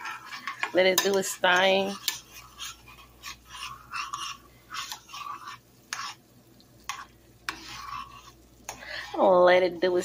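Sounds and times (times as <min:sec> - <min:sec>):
spoon scraping a pot: 0:00.0 - 0:06.2, 0:06.8 - 0:10.0.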